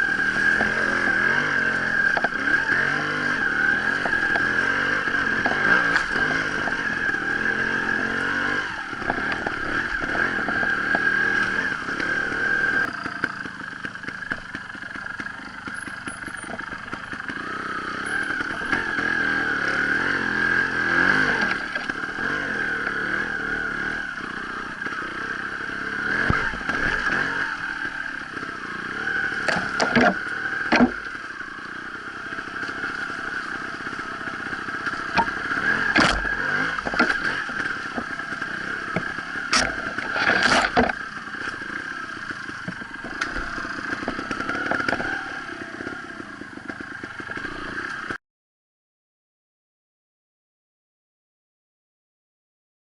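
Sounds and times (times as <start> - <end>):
motorcycle engine revving: 0.0 - 48.2.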